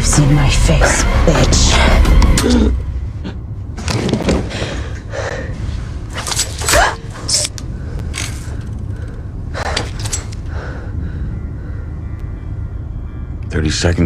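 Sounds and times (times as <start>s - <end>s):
steady low rumble: 0.0s - 14.0s
people gasping and straining: 4.3s - 12.0s.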